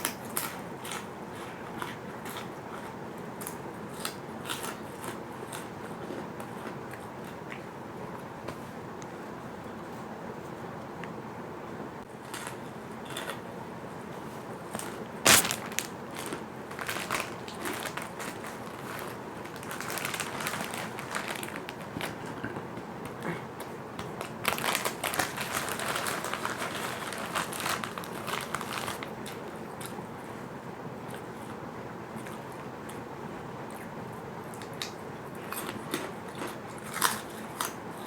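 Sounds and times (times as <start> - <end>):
crackers crunching: 0.0 - 7.6, 12.2 - 13.5, 14.6 - 23.2, 24.0 - 30.4, 34.5 - 38.0.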